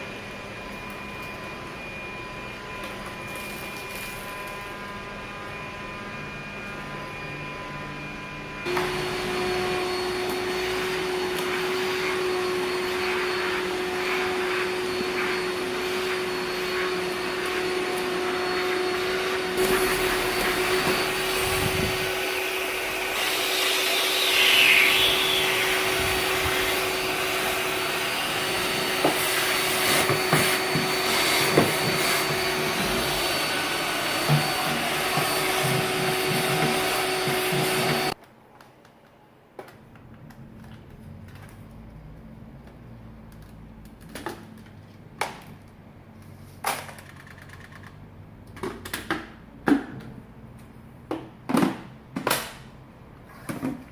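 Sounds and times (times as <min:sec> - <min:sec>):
stick vacuum cleaner humming: 0:00.0 - 0:38.2.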